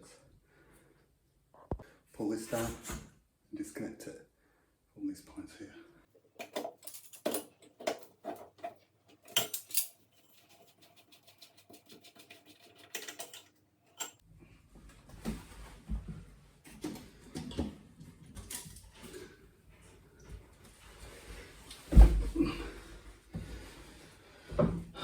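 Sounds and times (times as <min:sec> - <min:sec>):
metal fittings clinking and knocking: 0:06.4 - 0:14.2.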